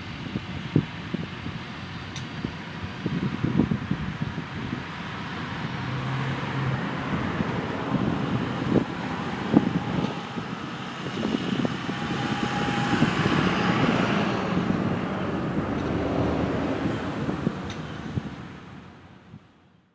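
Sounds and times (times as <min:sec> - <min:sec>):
vehicle passing: 0:05.4 - 0:19.1.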